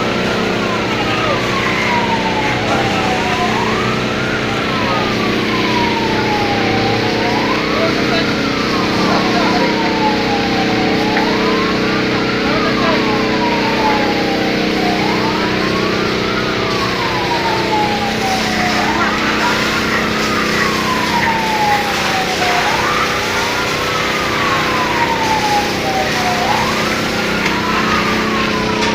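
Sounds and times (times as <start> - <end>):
engine hum: 0.0 - 28.9
fire engine siren wailing: 0.0 - 28.9.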